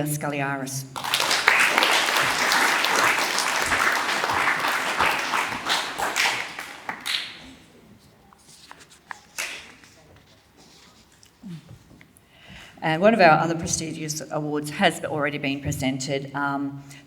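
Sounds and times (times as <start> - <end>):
audience clapping: 1.0 - 7.7, 9.4 - 9.9.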